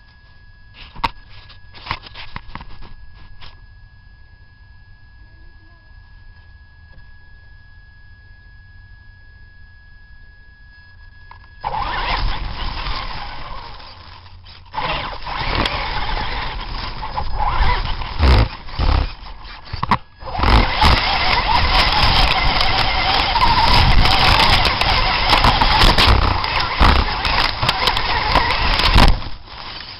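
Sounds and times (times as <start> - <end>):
rc truck motor and tyre noise: 11.4 - 29.9
sharp clicks and scrapes: 11.7 - 29.9.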